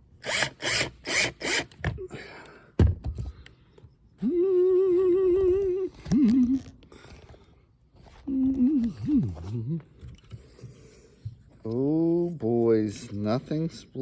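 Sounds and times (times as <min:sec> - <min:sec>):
man humming: 0:04.2 - 0:06.8, 0:08.2 - 0:10.0.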